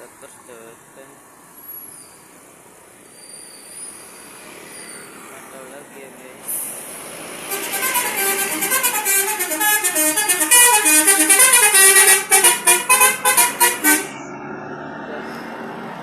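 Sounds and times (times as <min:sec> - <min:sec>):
bus musical horn melody: 0:07.5 - 0:14.3.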